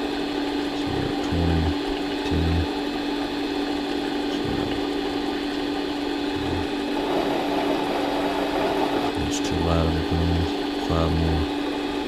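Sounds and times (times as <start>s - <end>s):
lathe motor whining: 4.3s - 9.2s.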